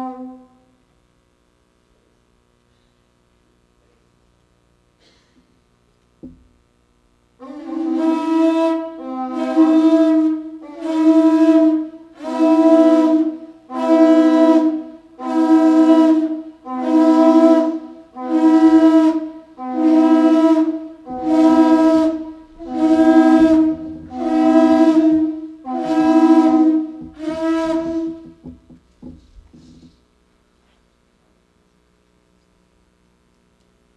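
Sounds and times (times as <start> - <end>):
horn blasts: 7.4 - 29.8.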